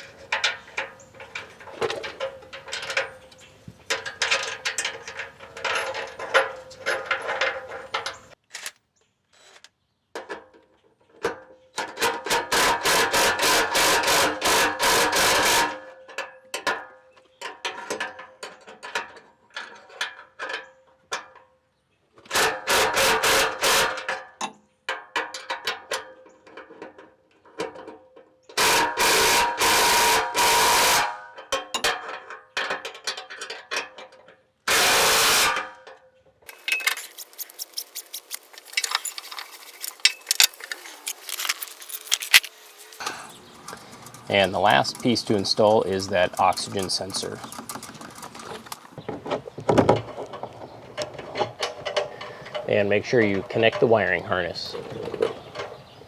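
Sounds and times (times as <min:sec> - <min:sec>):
ratchet clicking: 0:36.5 - 0:48.9.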